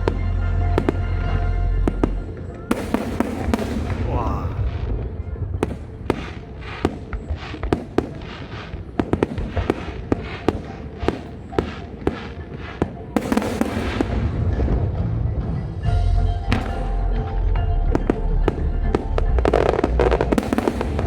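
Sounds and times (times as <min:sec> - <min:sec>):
fireworks bangs and cracks: 0:00.0 - 0:21.0
fireworks crackling burst: 0:05.6 - 0:14.4, 0:19.5 - 0:21.0.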